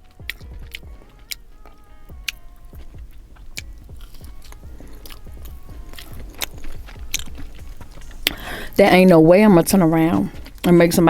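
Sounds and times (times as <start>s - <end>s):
crisp crunches: 0.0s - 8.8s
faint music: 0.0s - 11.0s
person chewing food: 0.0s - 11.0s.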